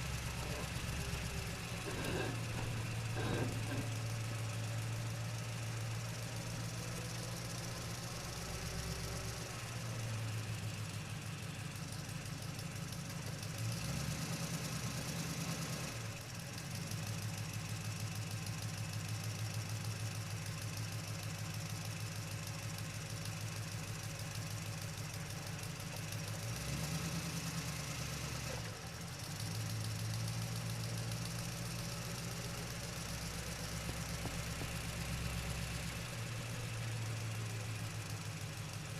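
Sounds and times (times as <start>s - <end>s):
truck engine knocking: 0.0s - 10.3s, 29.0s - 38.9s.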